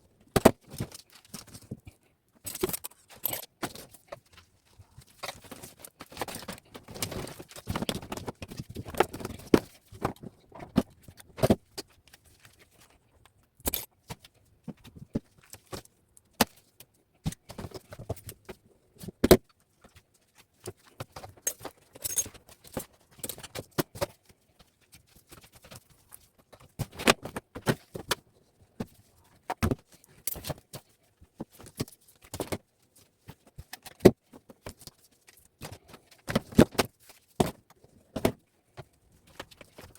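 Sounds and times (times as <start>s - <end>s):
wire snipping and clinking: 2.4s - 4.4s, 21.4s - 23.6s.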